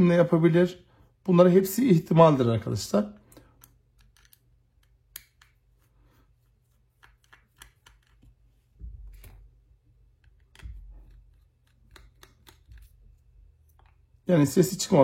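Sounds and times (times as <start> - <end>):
light clicks and taps on phone parts: 7.0 - 8.3.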